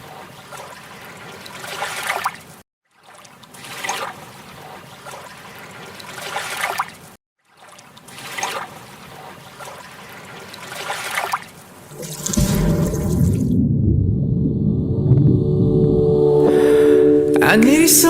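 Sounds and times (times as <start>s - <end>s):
water surging: 0.0s - 13.6s.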